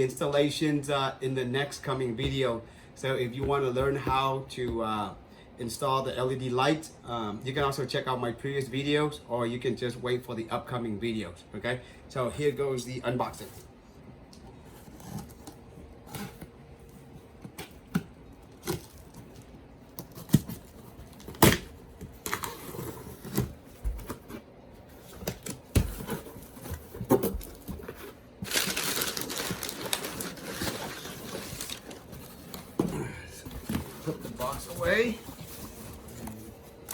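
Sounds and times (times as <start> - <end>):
packaging crinkling and tearing: 18.4 - 24.2, 25.1 - 32.6.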